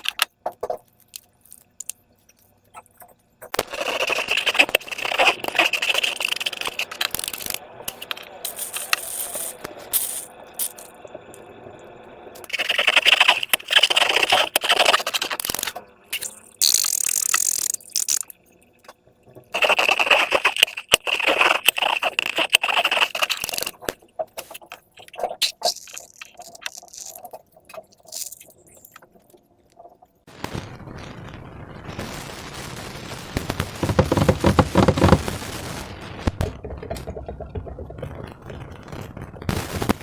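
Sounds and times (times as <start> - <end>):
small clicks and crackles: 0.0 - 11.5, 12.4 - 30.7, 33.4 - 40.0
slime and balloons crackling: 3.6 - 10.8, 12.5 - 18.3, 19.6 - 28.9, 30.4 - 40.0.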